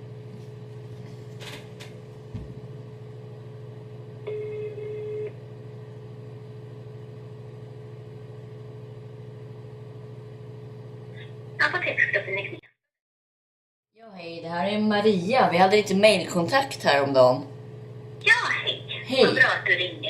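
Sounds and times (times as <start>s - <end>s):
low hum: 0.0s - 12.3s
soft thump: 2.3s - 2.6s
telephone ringback beep: 4.3s - 5.3s.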